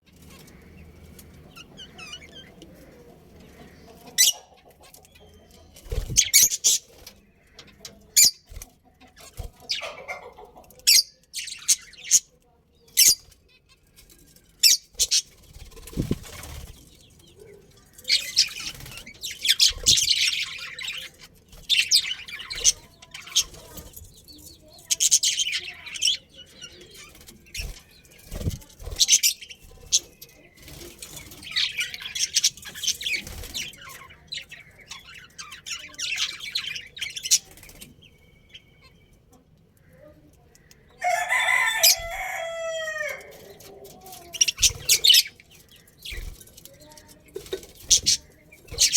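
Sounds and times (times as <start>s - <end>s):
budgerigars chirping: 0.3s - 8.5s, 14.6s - 39.1s, 44.3s - 46.5s, 47.8s - 48.9s.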